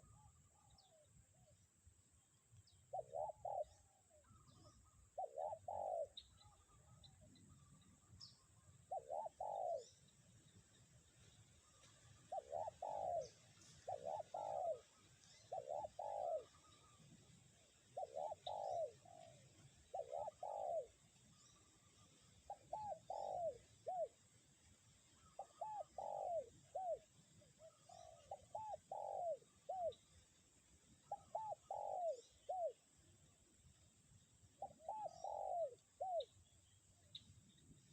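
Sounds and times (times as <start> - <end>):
dove cooing: 0.0 - 1.5, 2.9 - 10.0, 11.7 - 21.6, 22.4 - 24.2, 25.2 - 30.1, 31.0 - 32.9, 34.6 - 36.4
faint small bird chirps: 0.0 - 24.2, 24.8 - 30.4, 31.0 - 32.9, 34.5 - 37.9.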